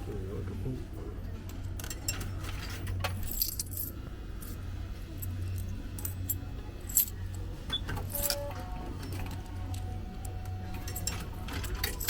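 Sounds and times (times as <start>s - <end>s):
vending machine low hum: 0.0s - 12.0s
coins clinking: 1.8s - 7.2s, 7.9s - 9.9s, 10.8s - 12.0s.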